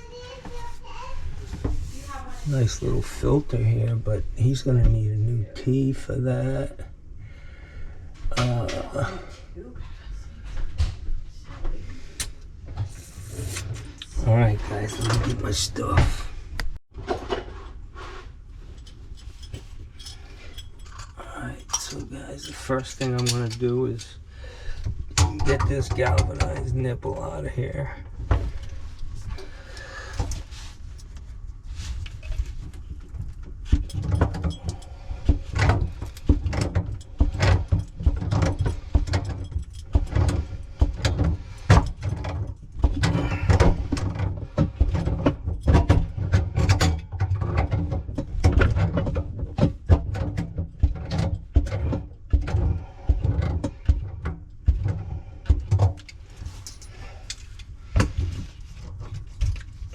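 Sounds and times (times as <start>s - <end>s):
metal tools clinking: 13.5s - 15.8s, 18.6s - 24.1s, 32.0s - 45.9s, 56.0s - 57.7s.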